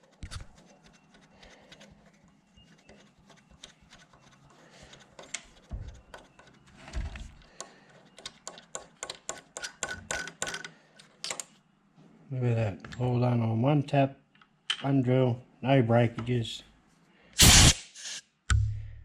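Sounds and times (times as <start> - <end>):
hand tools clicking and knocking: 7.3 - 11.5.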